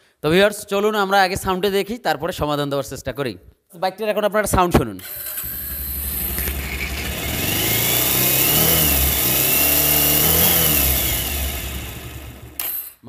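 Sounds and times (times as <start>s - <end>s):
motorcycle engine revving: 5.2s - 12.8s.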